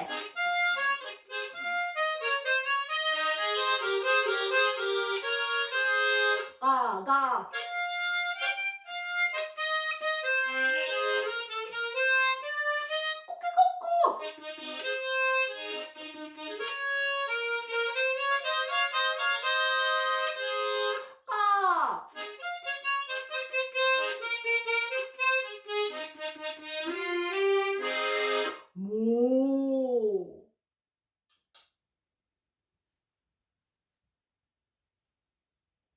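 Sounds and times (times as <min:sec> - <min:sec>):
harmonica swoop imitating animal call: 0:00.0 - 0:06.6, 0:07.5 - 0:28.6
tremolo harmonica melody: 0:00.0 - 0:21.4, 0:22.1 - 0:28.8.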